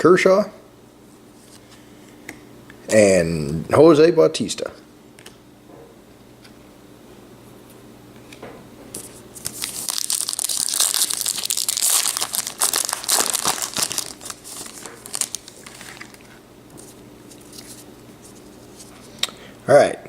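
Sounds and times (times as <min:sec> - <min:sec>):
wrapper tearing and crinkling: 0:09.4 - 0:16.4.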